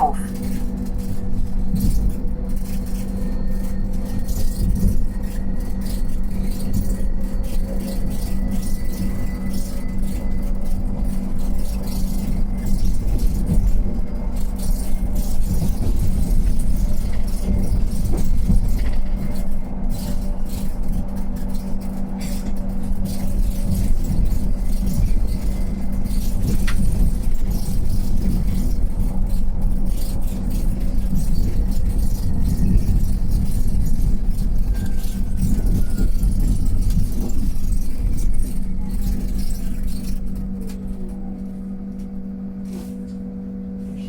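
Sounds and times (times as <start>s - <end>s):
electric bus drive hum: 0.0s - 44.0s
road and tyre rumble: 0.0s - 44.0s.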